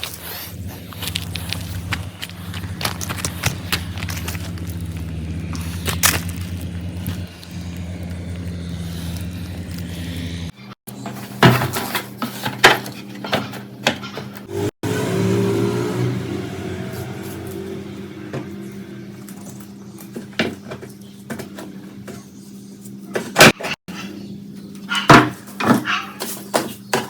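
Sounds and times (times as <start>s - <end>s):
steady low hum: 0.0s - 10.8s.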